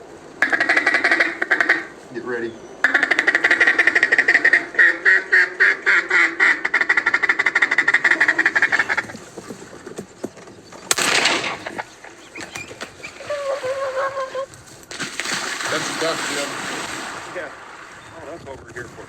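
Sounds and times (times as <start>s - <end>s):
duck quacks: 0.4s - 2.0s, 2.8s - 9.2s
sharp broadband burst: 10.9s - 12.3s.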